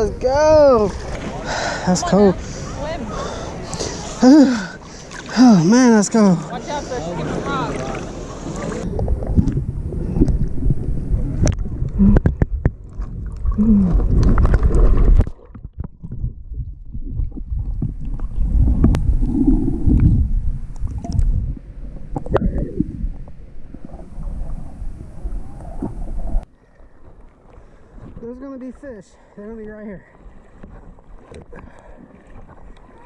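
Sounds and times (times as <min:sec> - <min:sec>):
water gurgling around kayak: 0:00.6 - 0:28.2, 0:30.0 - 0:33.0
wind rumbling on microphone: 0:07.2 - 0:26.5.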